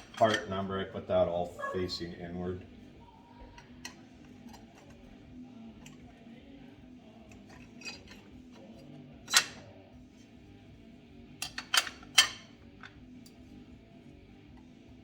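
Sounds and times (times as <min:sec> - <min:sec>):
clutch plates clinking: 0:11.4 - 0:13.0.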